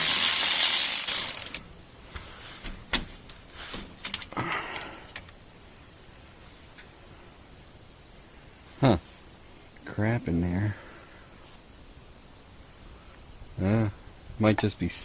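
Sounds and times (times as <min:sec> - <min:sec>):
metal parts clicking and knocking: 0:00.0 - 0:01.6
power tool running: 0:00.0 - 0:01.6.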